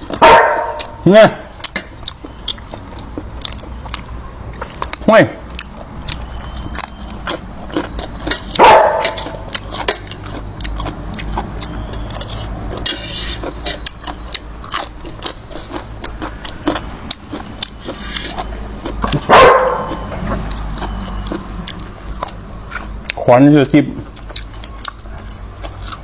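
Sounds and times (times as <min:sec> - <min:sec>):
dog barking: 0:00.1 - 0:01.0, 0:08.5 - 0:09.5, 0:19.2 - 0:20.1.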